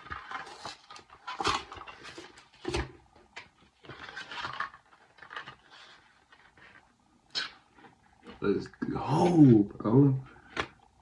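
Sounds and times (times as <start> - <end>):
package rustling and tearing: 0.0 - 2.9, 3.6 - 6.7.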